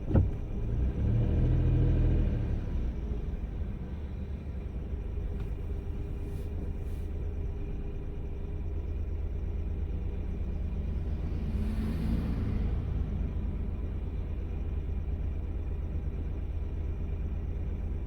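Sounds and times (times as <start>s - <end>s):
car road and engine rumble: 0.0s - 18.0s.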